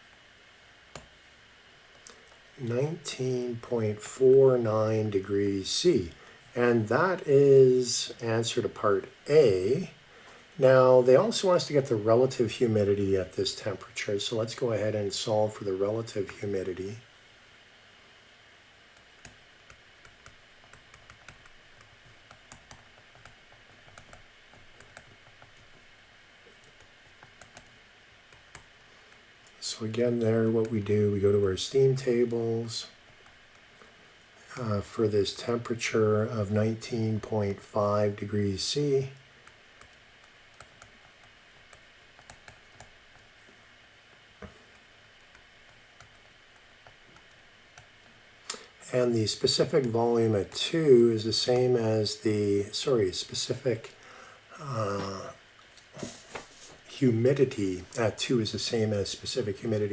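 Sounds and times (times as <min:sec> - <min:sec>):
room hiss: 0:00.0 - 0:59.9
keyboard typing: 0:19.2 - 0:25.8, 0:26.5 - 0:28.7, 0:39.4 - 0:43.3.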